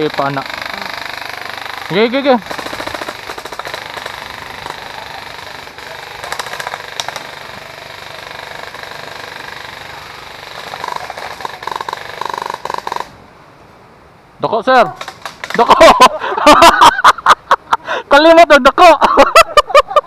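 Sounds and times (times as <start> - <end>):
fast mechanical rattle: 0.0 - 13.1.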